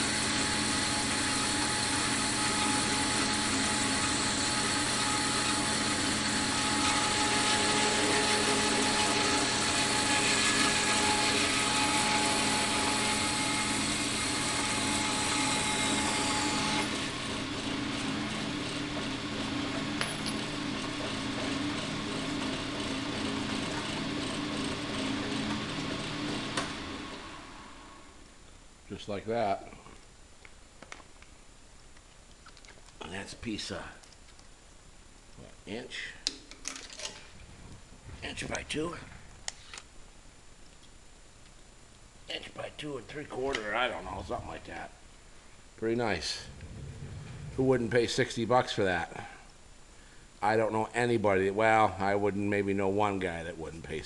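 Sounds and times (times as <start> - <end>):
bandsaw motor hum: 0.0 - 28.1.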